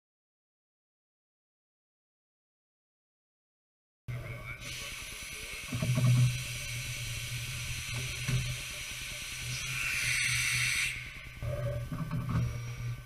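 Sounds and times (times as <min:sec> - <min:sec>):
steady hiss: 0:04.1 - 0:13.0
low hum: 0:09.4 - 0:13.0.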